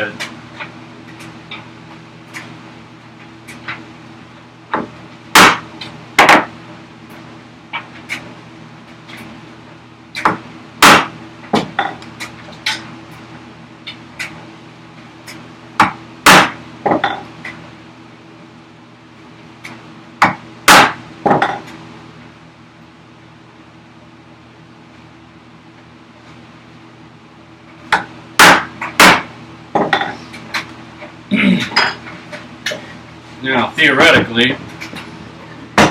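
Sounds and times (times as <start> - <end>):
hammer striking chisel into wood: 5.4 - 5.6, 10.2 - 11.7, 15.8 - 17.1, 20.2 - 21.6, 28.0 - 30.0.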